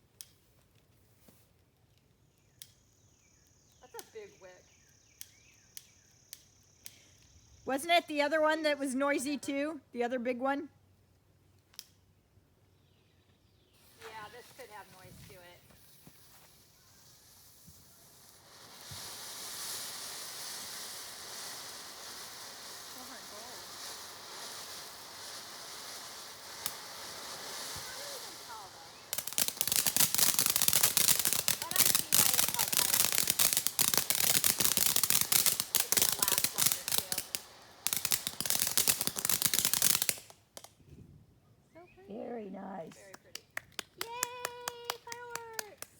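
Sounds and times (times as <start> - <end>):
ground firework hissing: 2.3 - 9.2, 13.7 - 40.7.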